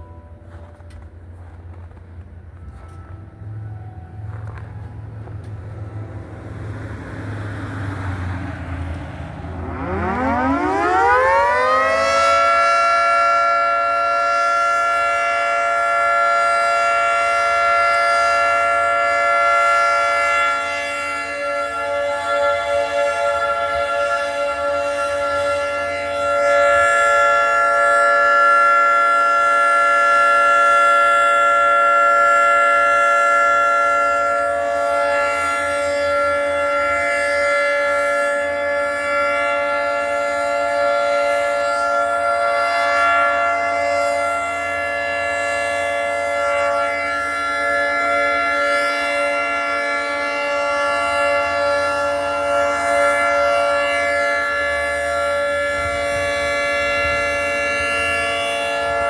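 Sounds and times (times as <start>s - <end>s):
outdoor warning siren steady chord: 0.0s - 59.0s.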